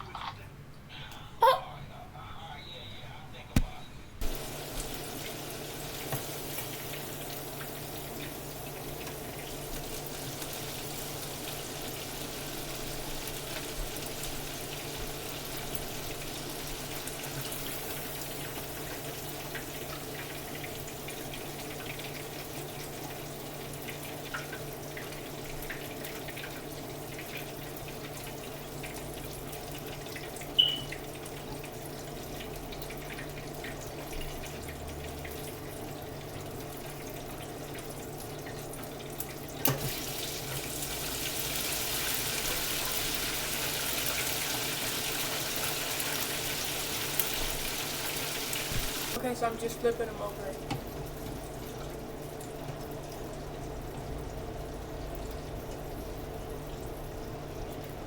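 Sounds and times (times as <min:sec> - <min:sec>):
chicken sizzling with pops: 0:03.6 - 0:35.2, 0:36.6 - 0:49.2.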